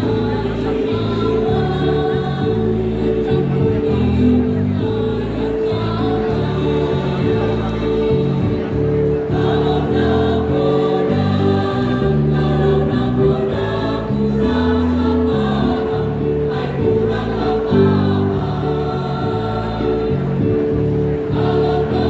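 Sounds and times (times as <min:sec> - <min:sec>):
choir singing in harmony: 0:00.0 - 0:22.0.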